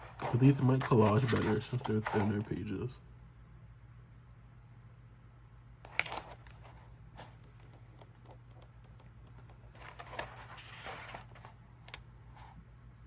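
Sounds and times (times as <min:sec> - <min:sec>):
paper rustle: 0:00.0 - 0:02.5, 0:09.7 - 0:11.6
paper pages tapping and clicking: 0:07.2 - 0:11.5.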